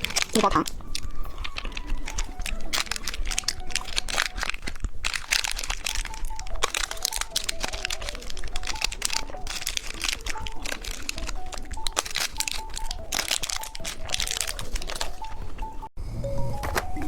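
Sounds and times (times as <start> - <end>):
plastic packaging crinkling: 0.0 - 15.9.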